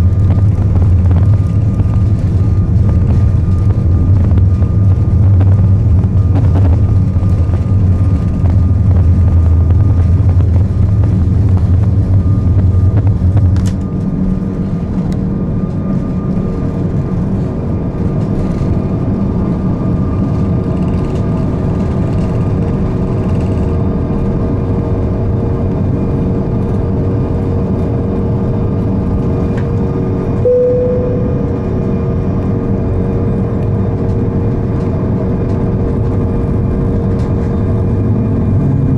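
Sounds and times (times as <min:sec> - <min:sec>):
low rumble: 0:00.0 - 0:16.7, 0:18.1 - 0:38.9
aircraft cabin engine noise: 0:00.0 - 0:38.9
cabin chime tone: 0:30.5 - 0:31.8.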